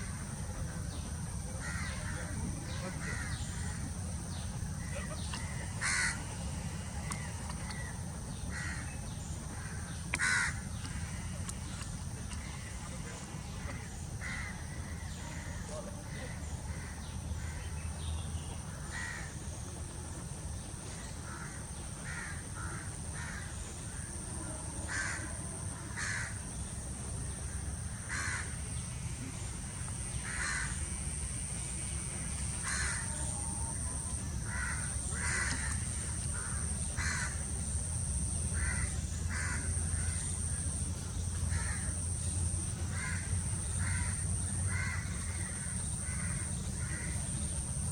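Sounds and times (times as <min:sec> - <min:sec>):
steady high-pitched whine: 0:00.0 - 0:47.9
crows cawing: 0:03.0 - 0:03.7, 0:04.8 - 0:06.3, 0:08.5 - 0:08.8, 0:09.6 - 0:11.2, 0:14.2 - 0:14.6, 0:18.9 - 0:19.3, 0:21.3 - 0:24.1, 0:24.9 - 0:25.2, 0:26.0 - 0:26.3, 0:28.0 - 0:28.6, 0:30.2 - 0:30.8, 0:32.6 - 0:33.0, 0:34.5 - 0:35.8, 0:36.4 - 0:37.4, 0:38.6 - 0:40.2, 0:41.5 - 0:41.9, 0:42.9 - 0:47.1.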